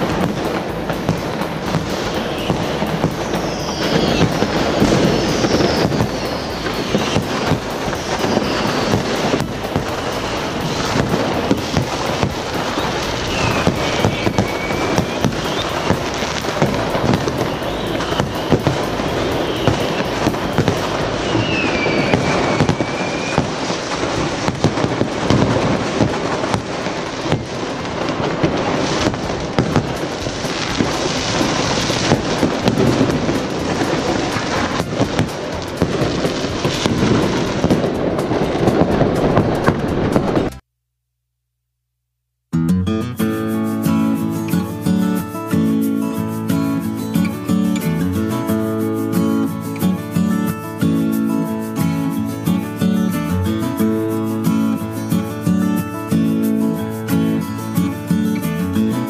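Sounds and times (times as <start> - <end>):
whistling rockets: 0.0 - 40.5
firecrackers crackling and banging: 0.0 - 40.6.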